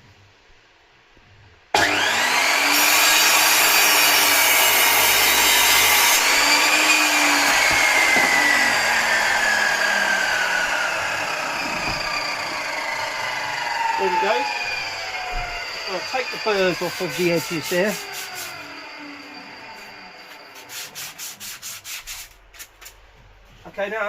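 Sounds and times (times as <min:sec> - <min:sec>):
electric chop saw whining: 0:01.7 - 0:20.7
saw blade cutting wood: 0:01.8 - 0:23.0.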